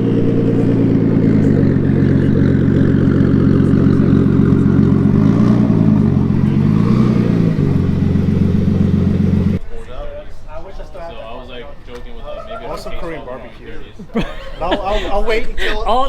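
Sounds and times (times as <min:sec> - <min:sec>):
car engine idling: 0:00.0 - 0:09.6
engine revving: 0:00.0 - 0:09.6.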